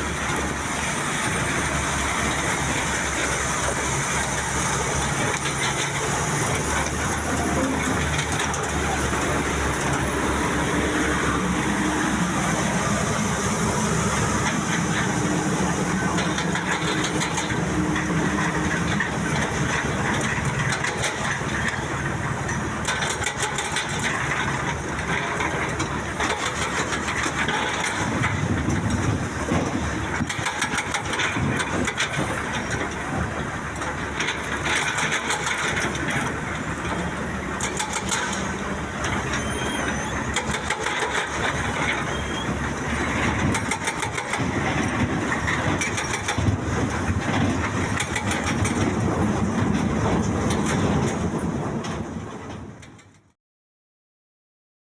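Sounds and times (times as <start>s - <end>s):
diesel engine running: 0.0s - 53.3s
rapid clattering: 22.8s - 39.4s, 40.3s - 53.2s.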